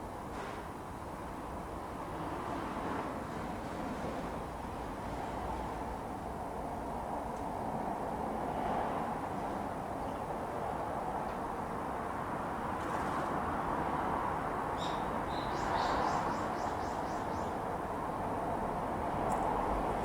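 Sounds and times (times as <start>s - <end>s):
road traffic hiss: 0.0s - 20.0s.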